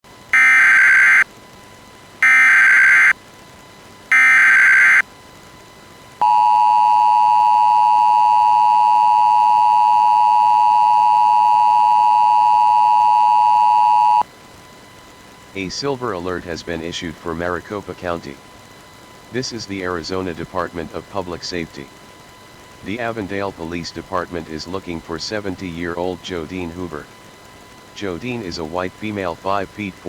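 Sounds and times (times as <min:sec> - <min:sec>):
digital data tone bursts: 0:00.4 - 0:01.2, 0:02.2 - 0:03.2, 0:04.1 - 0:05.0
steady two-tone alert signal: 0:00.4 - 0:01.2, 0:02.2 - 0:03.1, 0:04.1 - 0:05.0, 0:06.2 - 0:14.2.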